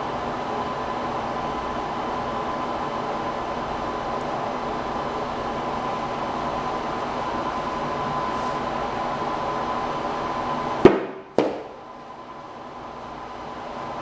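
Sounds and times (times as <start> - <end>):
mechanical hum with high tone: 0.0 - 14.0
tablet hitting floor: 10.9 - 11.8.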